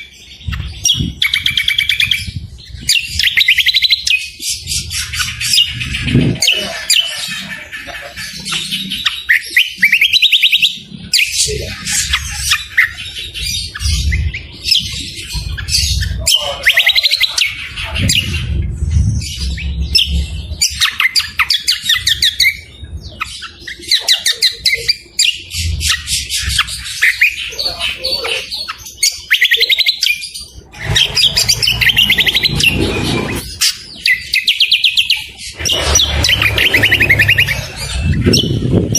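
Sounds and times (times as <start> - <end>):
songbird chirps and trills: 0.0 - 38.9
low background rumble: 17.5 - 20.8.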